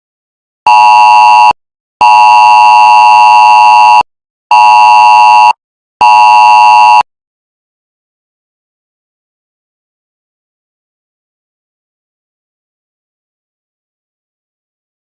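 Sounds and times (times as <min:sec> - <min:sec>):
two-tone alarm beeping: 0:00.7 - 0:07.1.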